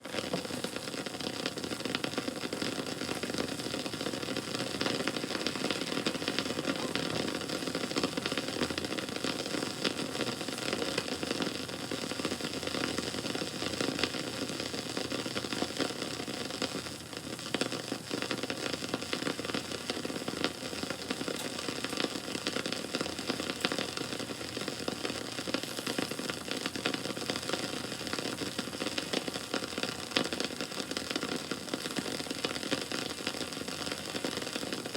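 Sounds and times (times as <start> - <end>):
campfire crackling: 0.0 - 34.9.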